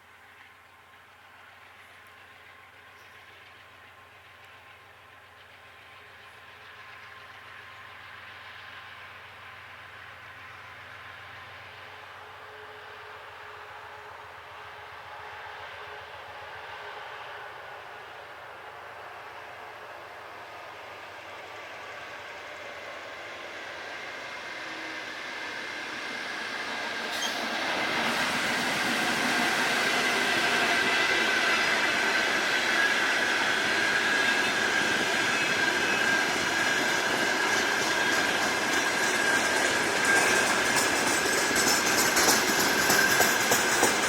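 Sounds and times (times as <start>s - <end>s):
freight train rolling on rails: 0.0s - 44.0s
thin wheel squeal: 27.1s - 27.5s
rail-joint clicks: 34.4s - 44.0s.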